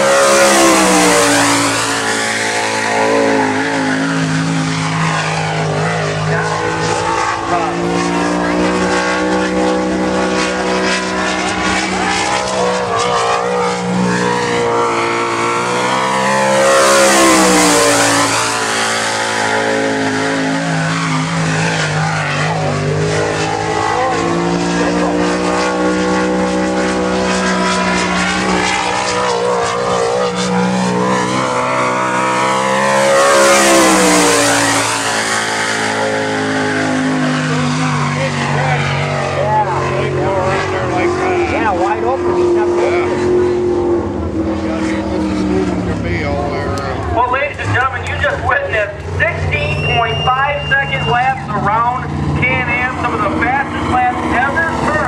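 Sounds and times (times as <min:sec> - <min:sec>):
race car engine passing by: 0:00.0 - 0:55.0.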